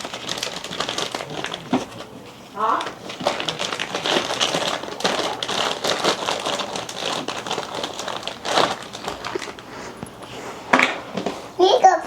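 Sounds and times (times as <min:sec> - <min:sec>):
slime crackling and popping: 0:00.0 - 0:09.6.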